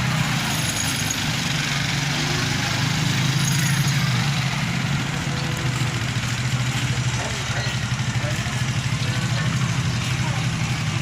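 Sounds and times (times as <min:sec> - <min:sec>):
heavy engine running: 0:00.0 - 0:11.0.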